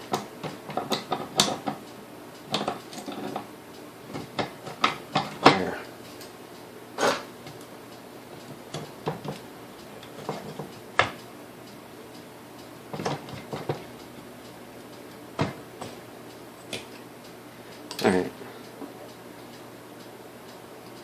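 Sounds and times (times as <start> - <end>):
metal parts clicking and knocking: 0.4 - 1.8.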